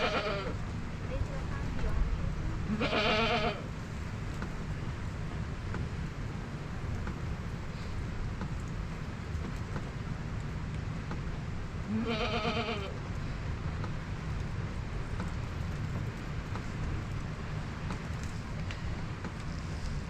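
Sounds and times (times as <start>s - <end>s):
goat or sheep bleating: 0.0s - 0.5s, 2.7s - 3.6s, 11.9s - 12.9s
low background noise: 0.0s - 20.0s.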